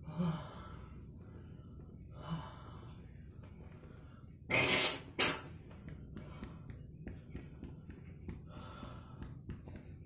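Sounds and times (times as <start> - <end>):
person forcing breath through nose: 4.4 - 6.7.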